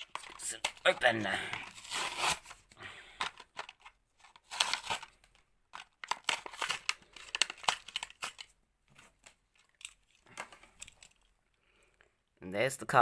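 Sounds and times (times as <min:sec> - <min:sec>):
cardboard tearing: 0:00.0 - 0:02.6, 0:04.4 - 0:05.1
plastic blister crinkling: 0:00.0 - 0:11.3.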